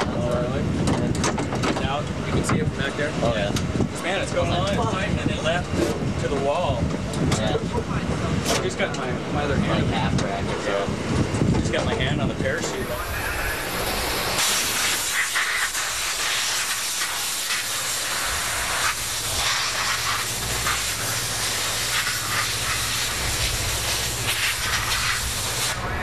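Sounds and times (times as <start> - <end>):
drag racing engine roaring: 7.0 - 26.0
low hum: 12.3 - 26.0.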